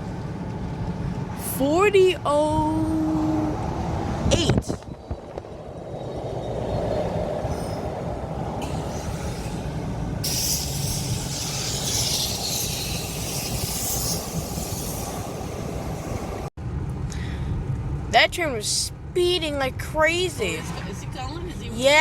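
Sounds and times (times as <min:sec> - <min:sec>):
train wheels rumbling on rail: 0:03.5 - 0:16.5
high hissing rattle: 0:08.6 - 0:16.2.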